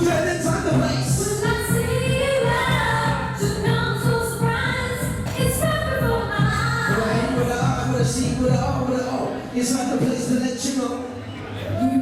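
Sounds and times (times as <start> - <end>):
dance music with vocals: 0.0 - 10.5.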